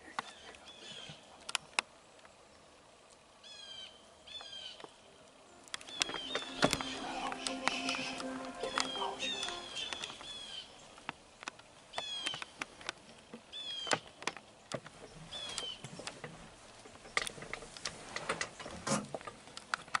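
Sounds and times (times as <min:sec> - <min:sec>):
bird harsh falling calls: 0:05.5 - 0:10.9
light clicks and rustles: 0:05.7 - 0:20.0.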